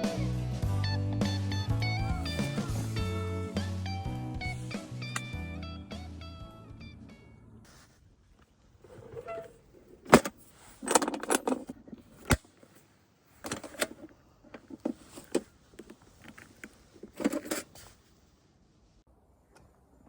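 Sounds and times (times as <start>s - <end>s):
hard objects clicking and knocking: 10.0s - 12.6s, 13.4s - 17.7s.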